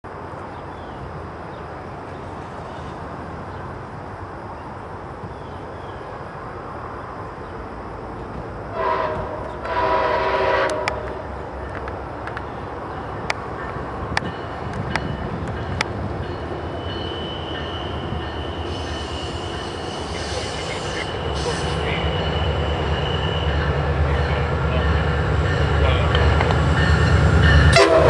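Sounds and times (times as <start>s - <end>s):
train rumbling: 0.1s - 28.0s
train air horn blasts: 8.7s - 11.3s, 27.6s - 28.0s.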